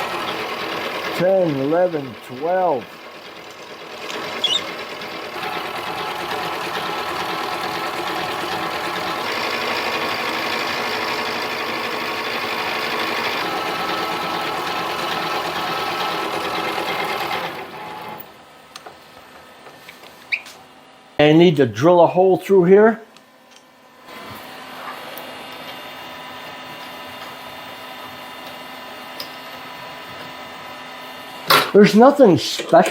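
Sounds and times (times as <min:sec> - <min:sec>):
lathe motor and gear whine: 0:00.0 - 0:18.4, 0:24.1 - 0:31.4.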